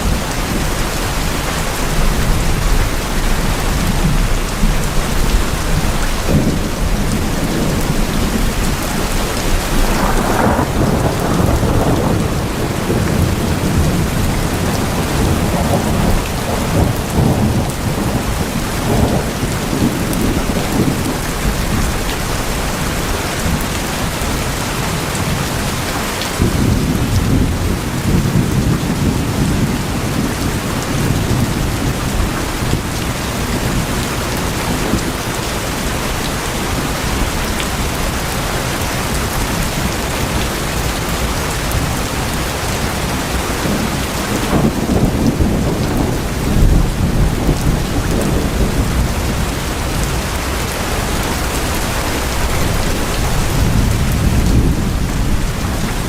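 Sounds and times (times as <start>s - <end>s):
heavy rain on tin roofs: 0.0s - 56.0s
rolls of thunder: 9.6s - 21.2s.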